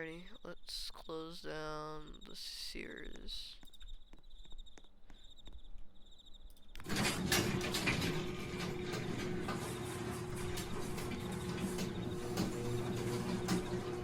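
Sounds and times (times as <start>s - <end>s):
door drive clicks and rattles: 6.7s - 14.0s
garage door opener motor hum: 6.7s - 14.0s.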